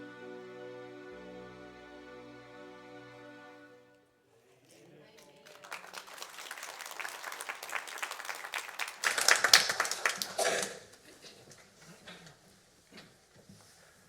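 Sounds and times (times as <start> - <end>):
congregation applauding: 4.7 - 10.9.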